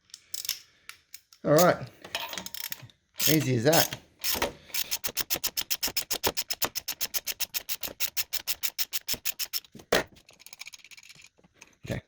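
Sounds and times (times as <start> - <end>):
ratchet wrench clicking: 2.5 - 11.2.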